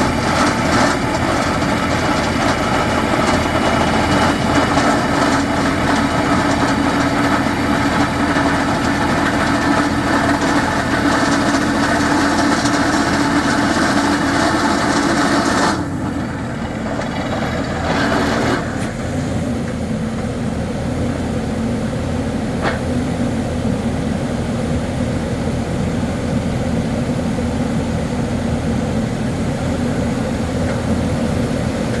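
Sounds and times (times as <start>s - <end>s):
rock drilling machinery running: 0.0s - 23.0s.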